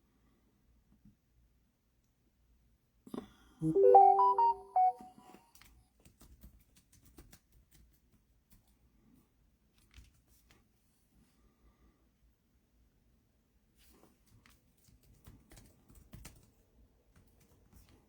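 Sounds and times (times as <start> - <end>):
rising electronic chime: 3.6 - 5.1.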